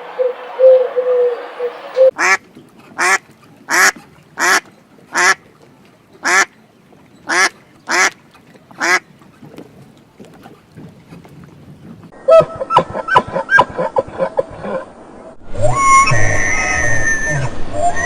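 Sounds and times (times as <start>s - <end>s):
duck quacking: 1.0s - 2.4s, 3.0s - 5.4s, 6.2s - 6.5s, 7.3s - 8.2s, 8.8s - 9.0s.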